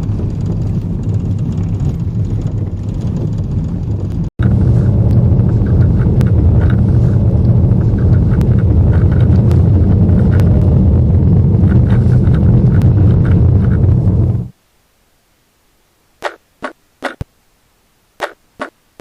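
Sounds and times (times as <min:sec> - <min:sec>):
car cabin road rumble: 0:00.0 - 0:14.6.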